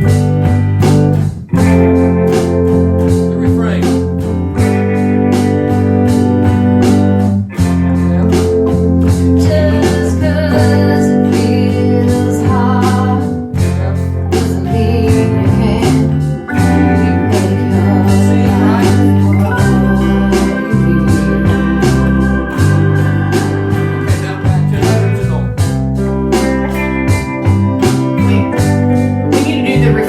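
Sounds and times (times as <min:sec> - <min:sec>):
drums keeping a steady beat: 0:00.0 - 0:30.0
live band playing: 0:00.0 - 0:30.0
wavering melody line: 0:14.5 - 0:30.0.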